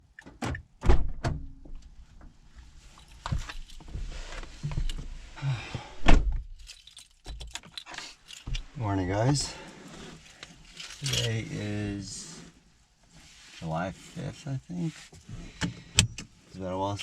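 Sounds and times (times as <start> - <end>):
car door knocks and thunks: 0.4 - 1.8, 5.8 - 6.5.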